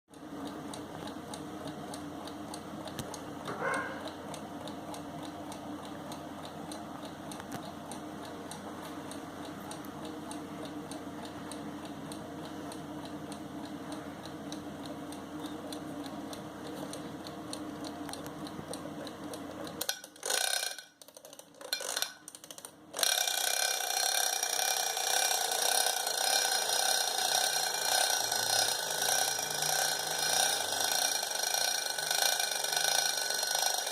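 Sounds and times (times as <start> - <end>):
alarm clock ticking: 0.1 - 33.9
alarm clock ringing: 19.8 - 21.0, 23.0 - 33.9.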